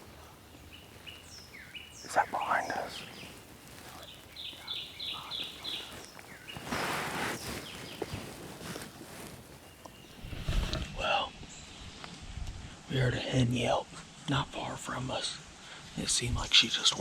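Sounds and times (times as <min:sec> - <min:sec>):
rustle: 0:00.0 - 0:12.9.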